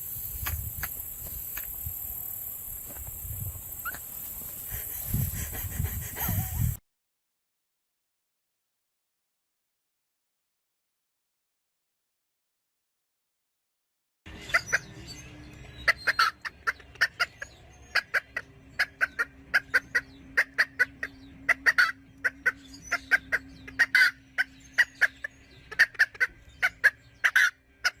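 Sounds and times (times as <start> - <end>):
fowl calling: 15.8 - 28.0.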